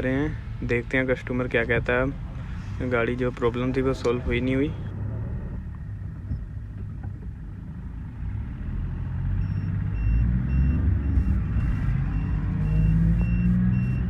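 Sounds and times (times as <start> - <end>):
diesel engine rumbling: 0.0 - 14.0
warning beeper: 9.5 - 14.0.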